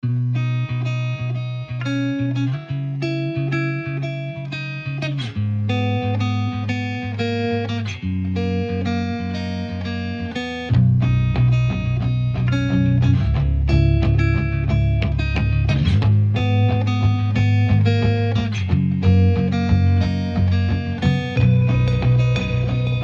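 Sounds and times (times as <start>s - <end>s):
plucked guitar music: 0.0s - 23.0s.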